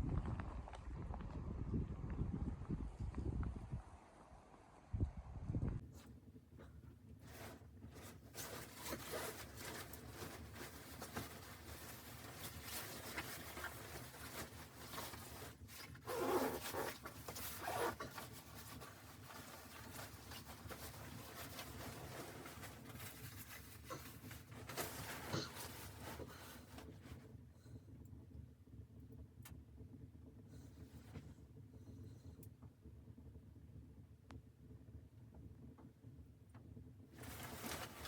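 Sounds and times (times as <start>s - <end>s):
scratchy rustling and handling: 5.9s - 27.3s, 37.2s - 38.0s.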